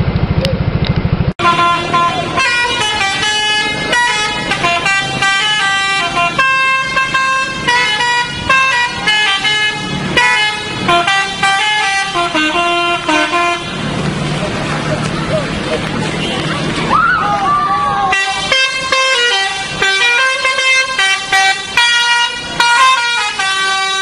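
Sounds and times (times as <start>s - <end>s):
bus musical horn melody: 1.4s - 13.9s, 18.1s - 24.0s.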